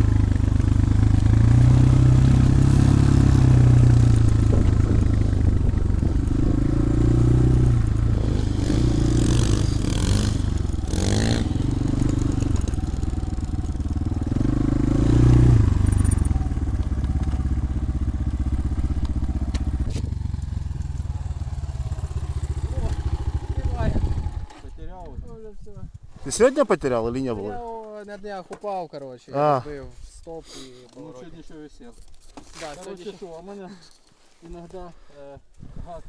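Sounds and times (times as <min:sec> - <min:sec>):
engine clatter: 0:00.0 - 0:24.8
motorcycle engine revving: 0:00.0 - 0:24.8.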